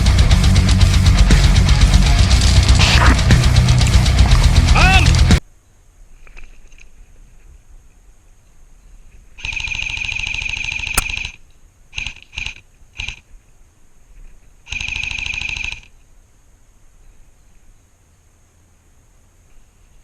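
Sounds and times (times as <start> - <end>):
airsoft gun firing full auto: 9.4 - 13.2, 14.7 - 15.9.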